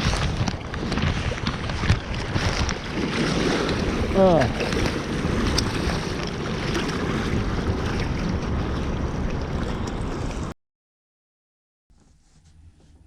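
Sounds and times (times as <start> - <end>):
wind buffeting microphone: 0.0 - 10.5.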